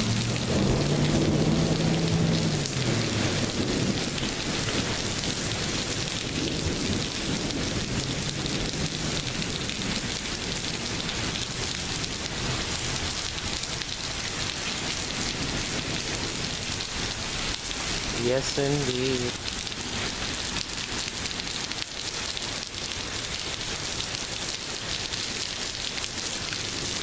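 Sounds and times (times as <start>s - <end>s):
thunder rumbling: 0.0s - 10.0s
heavy rain falling: 0.0s - 27.0s.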